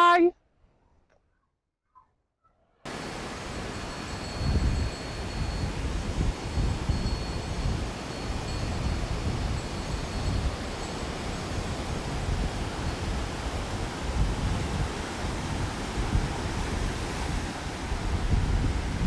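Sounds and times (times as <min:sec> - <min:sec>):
faint high chime tone: 0:02.9 - 0:11.8
ocean surf washing: 0:02.9 - 0:19.0
wind buffeting microphone: 0:02.9 - 0:19.0.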